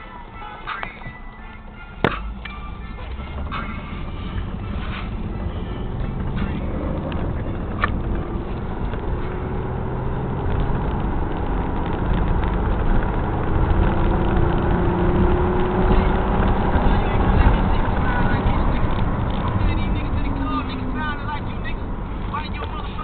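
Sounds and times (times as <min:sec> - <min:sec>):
car engine running: 0:00.0 - 0:23.0.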